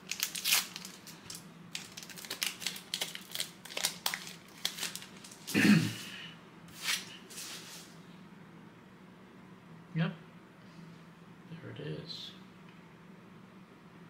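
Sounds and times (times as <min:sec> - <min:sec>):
cards clicking and rustling: 0:00.0 - 0:05.5
wrappers crinkling and tearing: 0:00.0 - 0:05.6.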